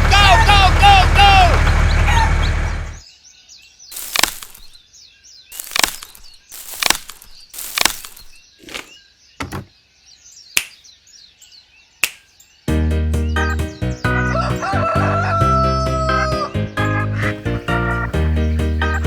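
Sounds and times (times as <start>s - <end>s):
birds chirping: 1.5s - 15.4s, 16.0s - 19.0s.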